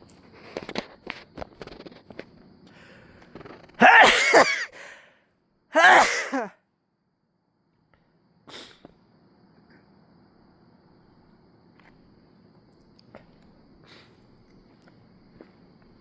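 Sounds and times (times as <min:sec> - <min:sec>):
man sneezing: 0:03.8 - 0:05.0, 0:05.8 - 0:06.5.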